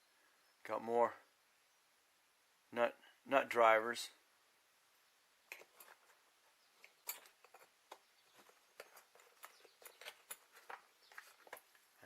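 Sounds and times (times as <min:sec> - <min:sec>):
small hand tools clicking and tapping: 0:06.8 - 0:11.8.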